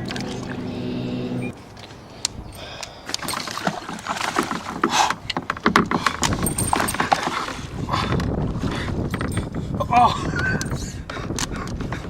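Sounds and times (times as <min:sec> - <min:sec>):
low rumble: 0:00.0 - 0:01.6
gear clicking and knocking: 0:05.3 - 0:07.3.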